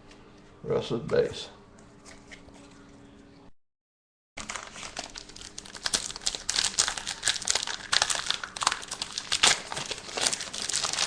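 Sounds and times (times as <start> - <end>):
foil wrapper crinkling: 4.4 - 11.0.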